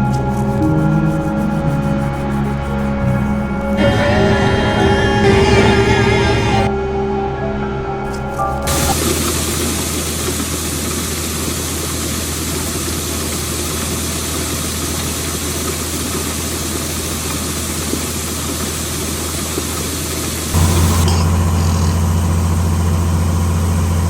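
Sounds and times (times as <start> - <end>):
music: 0.0 - 9.0
diesel engine droning: 3.6 - 6.7, 8.7 - 16.2, 20.6 - 24.0.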